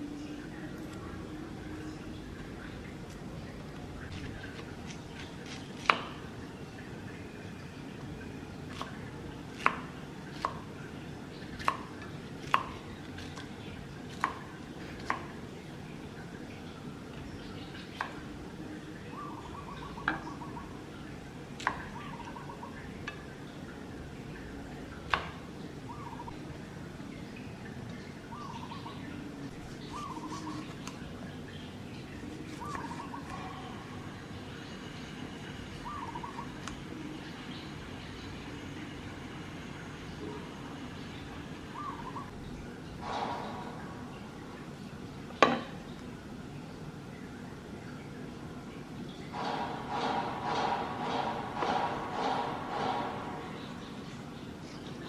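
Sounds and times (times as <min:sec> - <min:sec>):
bird calling: 0:16.9 - 0:23.6, 0:25.1 - 0:26.4, 0:28.0 - 0:38.9, 0:40.1 - 0:46.0.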